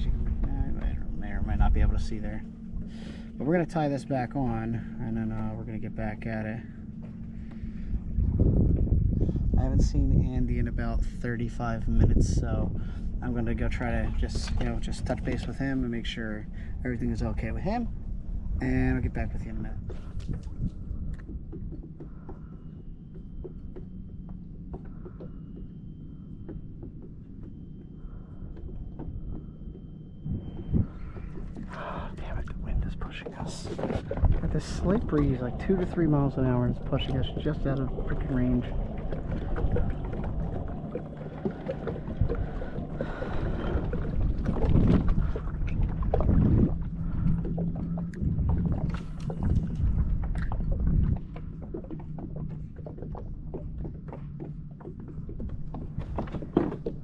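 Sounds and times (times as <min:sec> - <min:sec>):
low steady rumble: 0:00.0 - 0:57.0
paddle swishing in water: 0:19.8 - 0:57.0
water drips: 0:19.8 - 0:57.0.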